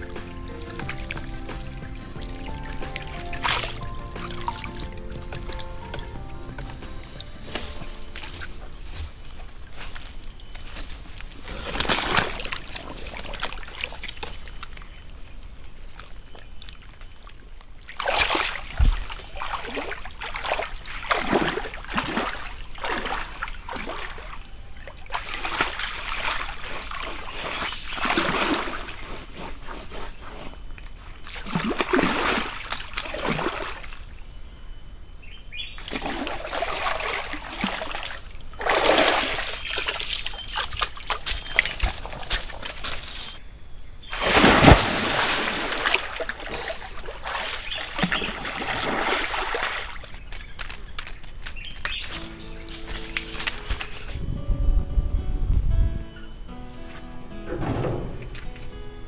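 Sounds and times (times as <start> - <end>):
water splashing and sloshing: 0.0 - 34.2, 35.8 - 43.4, 44.0 - 54.2, 56.9 - 59.0
high-pitched whine: 42.1 - 50.2.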